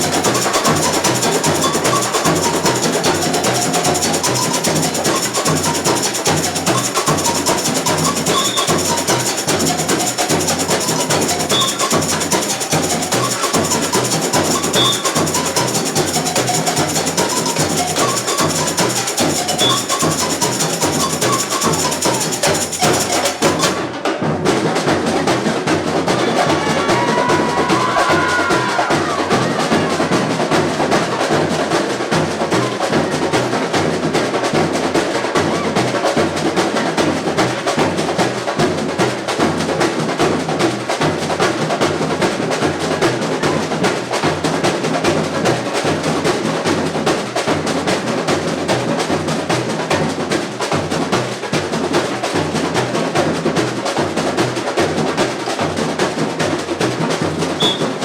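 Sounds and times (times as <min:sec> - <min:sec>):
samba percussion ensemble drumming: 0:00.0 - 0:58.0
bright high percussion shimmer: 0:10.7 - 0:23.8.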